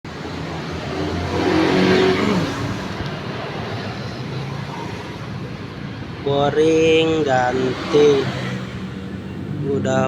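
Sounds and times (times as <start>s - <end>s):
scooter engine revving: 0.3s - 5.8s.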